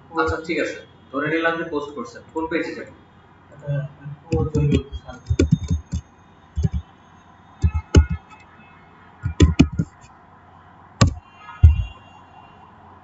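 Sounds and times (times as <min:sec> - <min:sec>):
computer keyboard clicks: 0:04.3 - 0:06.0, 0:06.6 - 0:06.8, 0:07.6 - 0:08.4, 0:09.2 - 0:10.1
mouse clicks: 0:04.4 - 0:06.0, 0:06.6 - 0:06.8, 0:07.6 - 0:08.3.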